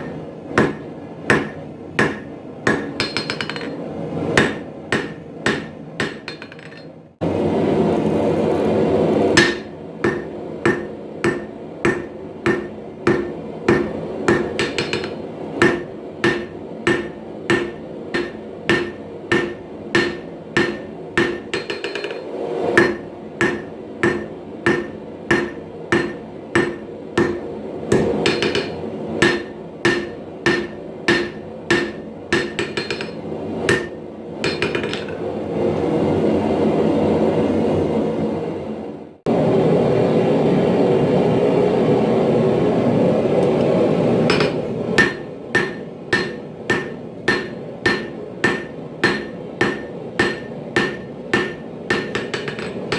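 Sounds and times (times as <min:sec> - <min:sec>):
hammer striking steel on anvil: 0:00.0 - 0:07.0, 0:09.3 - 0:35.3, 0:44.3 - 0:52.9.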